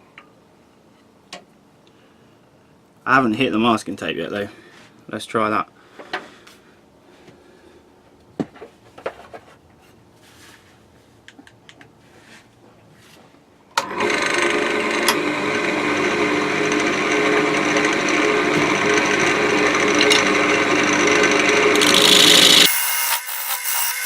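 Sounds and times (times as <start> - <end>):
machine hum: 13.8 - 22.7
lathe tool scraping wood: 13.8 - 24.0.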